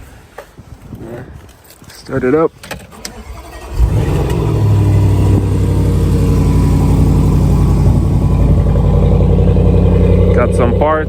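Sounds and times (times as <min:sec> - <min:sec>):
car engine idling: 0:02.9 - 0:11.0.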